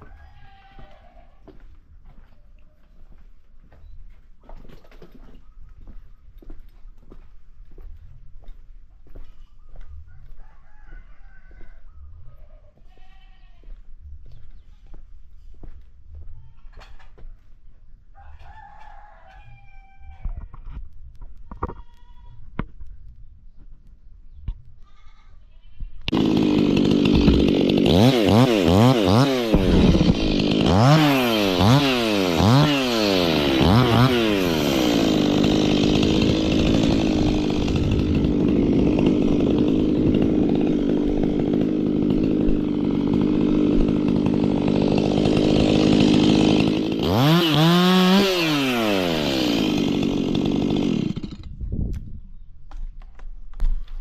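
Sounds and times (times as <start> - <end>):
chainsaw revving and cutting wood: 26.1 - 51.6.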